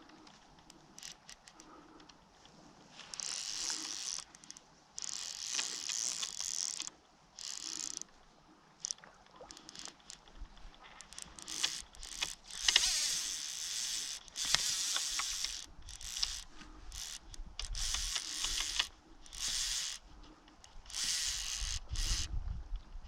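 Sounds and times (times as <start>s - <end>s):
fishing reel ratchet clicking: 0.6s - 1.7s, 3.1s - 8.1s, 8.8s - 10.2s, 11.0s - 20.0s, 20.6s - 22.4s.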